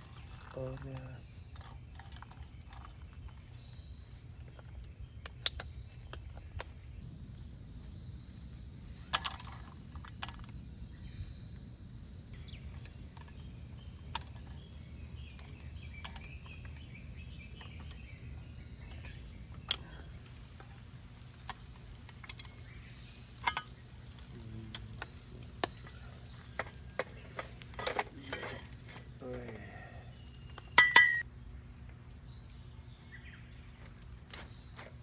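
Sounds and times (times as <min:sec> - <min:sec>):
faint chirps: 0:07.0 - 0:20.2
sharp clicks and knocks: 0:07.0 - 0:20.2
steady low rumble: 0:07.0 - 0:20.3.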